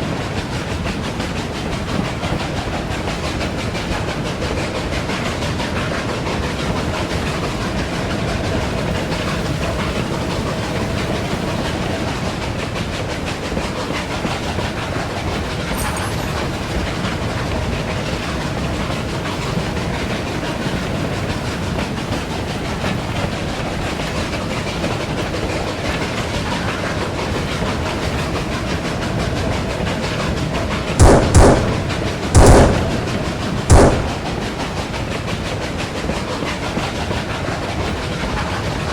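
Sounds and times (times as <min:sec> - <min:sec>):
train clickety-clack: 0:00.0 - 0:38.9
loud sudden bangs: 0:31.0 - 0:34.4.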